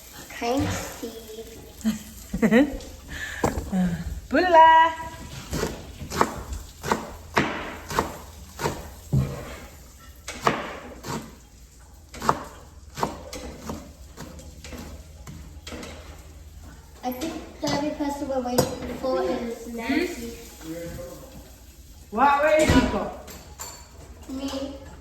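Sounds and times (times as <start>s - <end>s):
knife chopping on cutting board: 5.2s - 9.7s, 10.3s - 11.4s, 12.1s - 15.0s.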